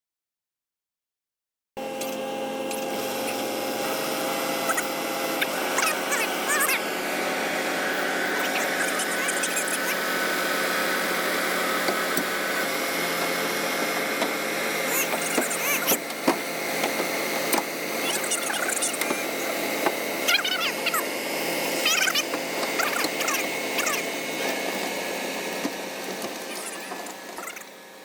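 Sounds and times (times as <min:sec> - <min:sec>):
clicks and squeaks: 0:14.9 - 0:16.0, 0:18.0 - 0:19.2, 0:21.8 - 0:24.1, 0:26.4 - 0:27.8.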